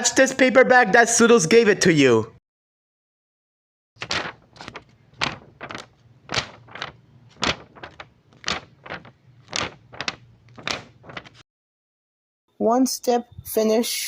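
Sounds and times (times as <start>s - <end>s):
paper bag crinkling: 4.0s - 11.4s.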